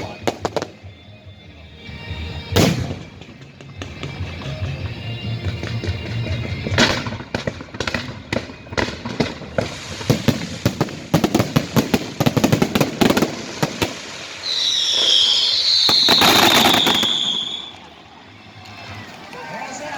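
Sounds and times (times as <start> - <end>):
firecracker bangs: 2.6 - 4.3, 5.6 - 17.9
high warbling firework whistle: 9.2 - 11.1, 12.7 - 19.3.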